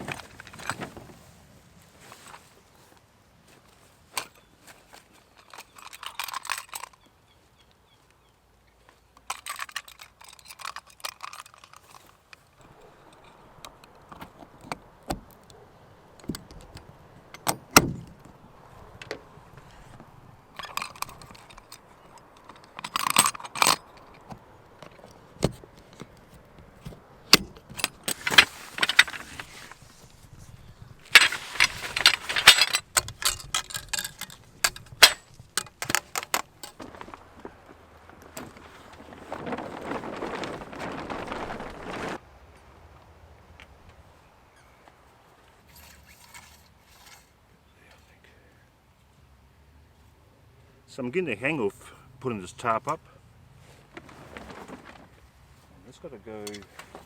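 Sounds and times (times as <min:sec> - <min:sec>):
crinkly rustling: 0:00.0 - 0:07.0, 0:08.8 - 0:42.2, 0:53.6 - 0:57.0
metallic clinks: 0:31.0 - 0:36.8.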